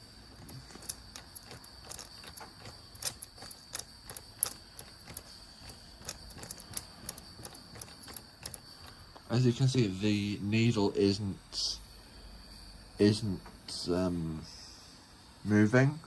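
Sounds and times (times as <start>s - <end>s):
steam locomotive clicks and ticks: 0.4s - 9.3s.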